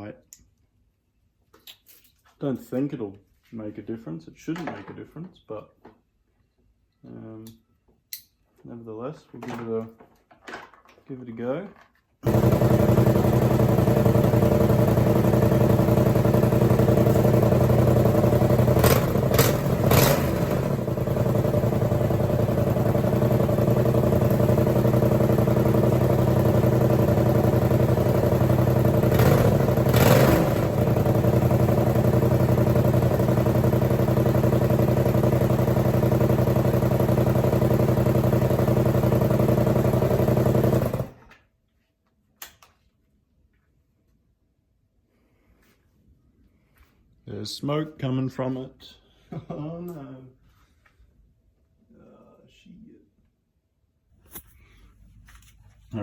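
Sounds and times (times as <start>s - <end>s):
motorcycle engine idling: 12.3s - 41.2s.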